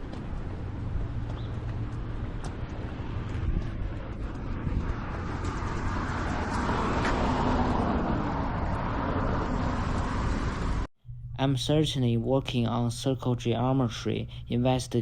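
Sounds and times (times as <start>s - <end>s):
road traffic rumble: 0.0s - 10.9s
vehicle passing: 0.0s - 10.9s.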